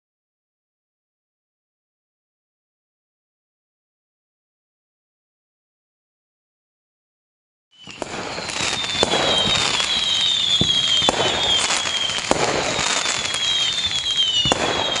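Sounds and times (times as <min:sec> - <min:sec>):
falling whistles: 0:07.7 - 0:15.0
firework bangs: 0:07.8 - 0:15.0
fireworks crackling: 0:07.8 - 0:15.0.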